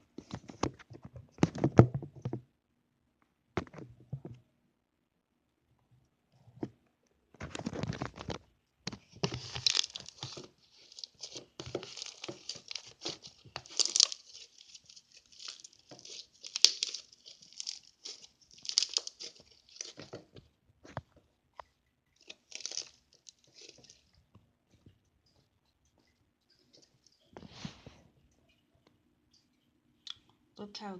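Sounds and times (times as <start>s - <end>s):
slime squished by hand: 9.0s - 20.4s, 22.2s - 24.1s.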